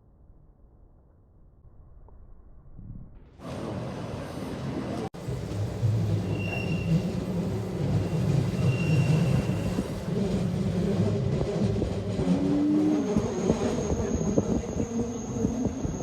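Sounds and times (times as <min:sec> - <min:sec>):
train rumbling on rails: 0:03.4 - 0:16.0.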